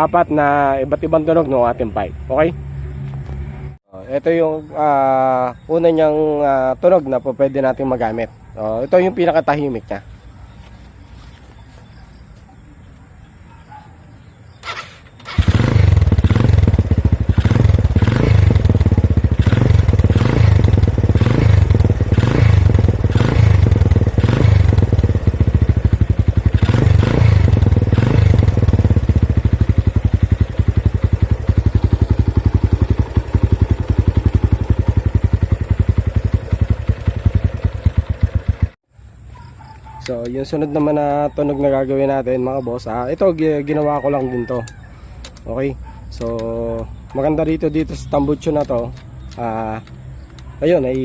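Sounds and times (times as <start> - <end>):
motorcycle engine starting and revving: 14.5 - 38.9, 46.2 - 51.0.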